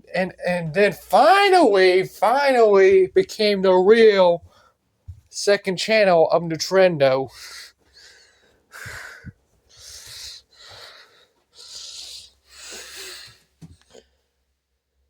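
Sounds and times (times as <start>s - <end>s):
soft handling thumps: 4.4s - 5.3s
person breathing wheezily: 7.3s - 14.1s.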